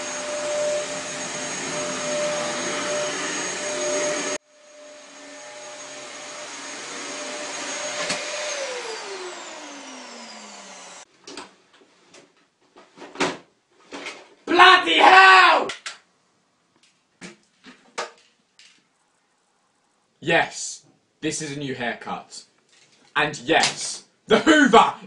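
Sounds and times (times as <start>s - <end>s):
vacuum cleaner whining: 0.0s - 11.1s.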